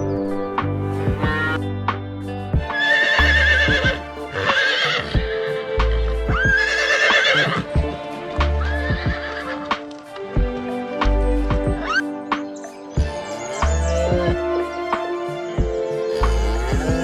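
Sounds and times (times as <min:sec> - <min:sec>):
background music: 0:00.0 - 0:17.0
horse whinnying: 0:02.6 - 0:05.6, 0:06.3 - 0:07.8, 0:08.6 - 0:09.7.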